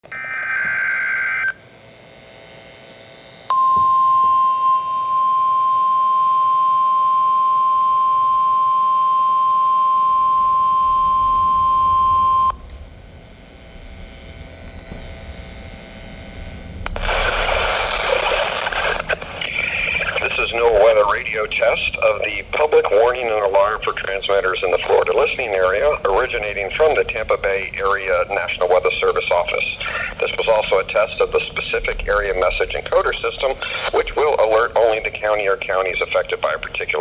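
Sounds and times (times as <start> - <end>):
steady warning beep: 0.0 - 1.7, 2.3 - 12.8
radio hiss: 0.0 - 37.0
person speaking: 18.0 - 37.0.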